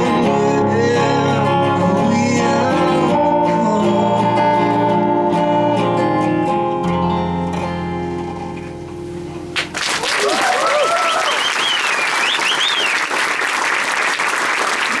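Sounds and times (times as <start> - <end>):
guitar chord ringing: 0.0 - 9.6
audience applause and cheering: 9.6 - 15.0.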